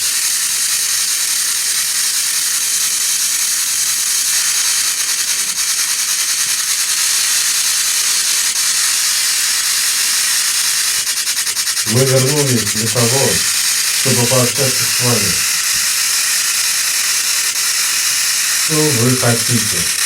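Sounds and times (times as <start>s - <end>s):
static hiss: 11.7s - 20.0s.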